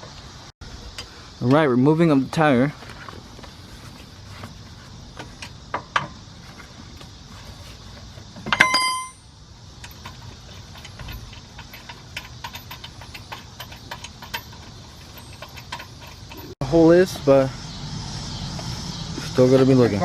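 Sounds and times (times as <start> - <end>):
small metallic clicks and ticking: 8.5 - 16.6.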